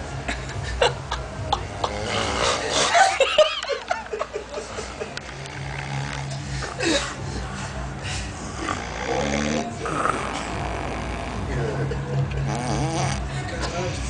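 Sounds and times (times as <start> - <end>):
person snoring: 1.9 - 3.0, 5.5 - 6.7, 8.5 - 11.7, 12.4 - 13.3.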